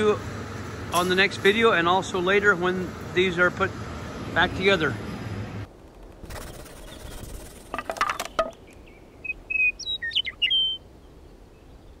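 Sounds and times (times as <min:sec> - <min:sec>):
bird chirping and whistling: 0:06.7 - 0:07.4, 0:08.3 - 0:10.8
sharp clicks and knocks: 0:07.7 - 0:08.6.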